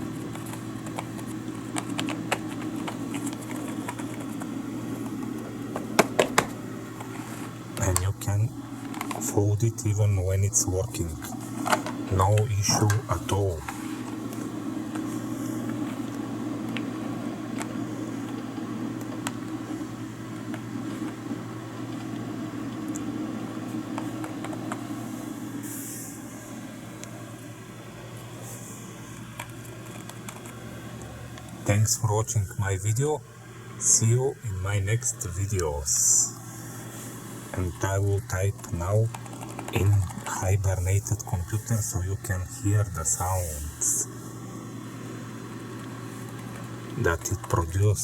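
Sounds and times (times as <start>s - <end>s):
computer humming: 0.0s - 48.0s
typing on soft keyboard: 0.2s - 4.5s.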